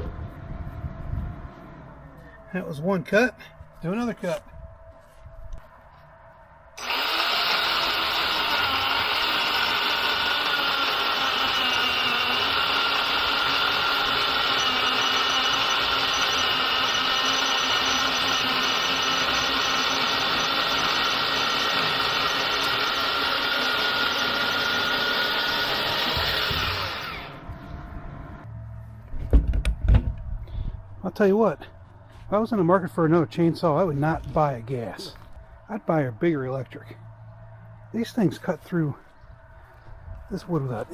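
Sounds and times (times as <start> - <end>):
electric chainsaw cutting log: 6.8 - 27.7.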